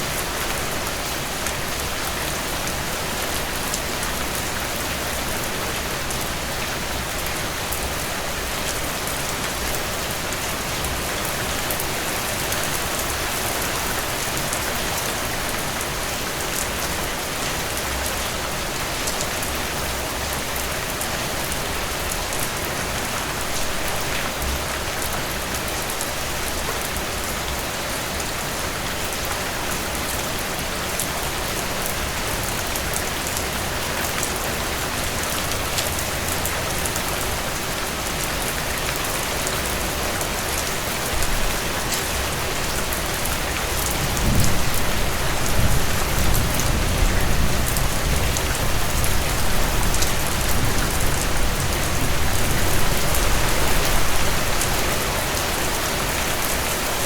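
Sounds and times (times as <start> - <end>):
heavy rain falling: 0.0 - 57.0.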